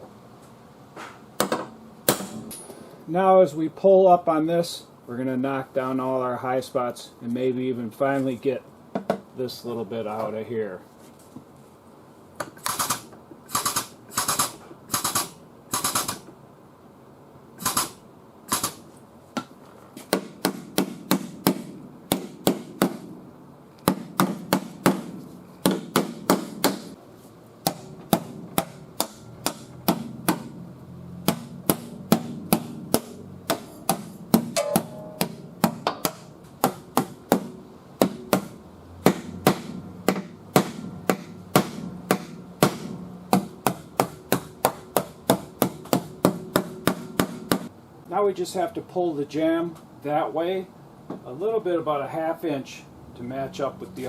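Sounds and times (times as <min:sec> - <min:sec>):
hammer blows on sheet metal: 0:31.2 - 0:47.7.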